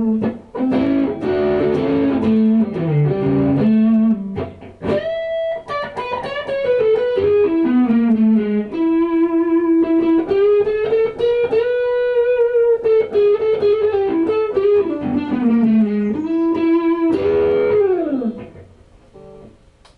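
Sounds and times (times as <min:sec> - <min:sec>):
electric guitar lead melody: 0:00.0 - 0:19.6.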